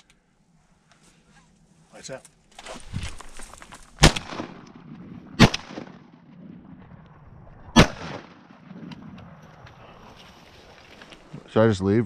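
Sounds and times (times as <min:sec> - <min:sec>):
shotgun shots: 0:04.0 - 0:06.2, 0:07.7 - 0:09.1.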